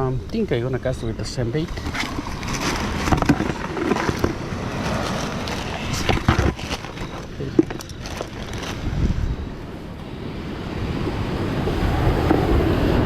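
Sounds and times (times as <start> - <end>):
wind buffeting microphone: 0.0 - 13.0
surf washing: 1.7 - 6.2.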